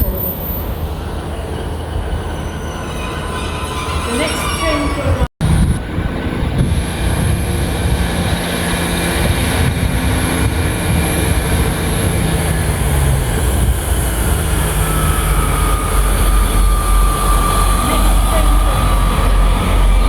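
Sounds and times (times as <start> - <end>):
high brake squeal: 0.0 - 1.0, 2.2 - 5.3, 14.4 - 20.0
train rumbling into platform: 0.0 - 20.0
low engine tones: 5.2 - 20.0.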